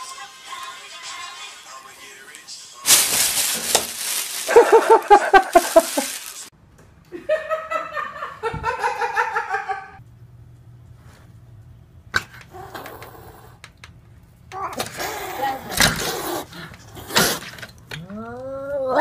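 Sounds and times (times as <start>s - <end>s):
person laughing: 4.4s - 6.3s.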